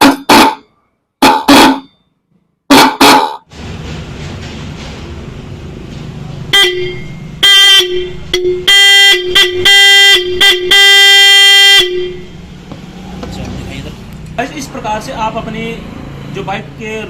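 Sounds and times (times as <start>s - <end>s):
electric horn toots: 6.5s - 12.4s.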